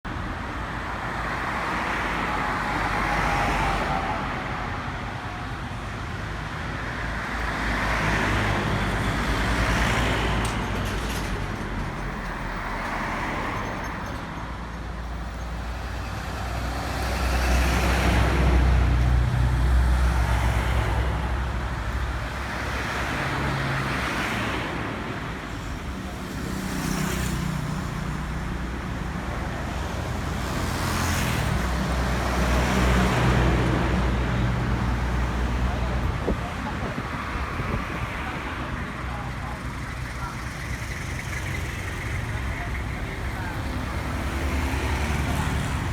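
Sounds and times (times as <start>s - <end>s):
road traffic rumble: 0.0s - 45.9s.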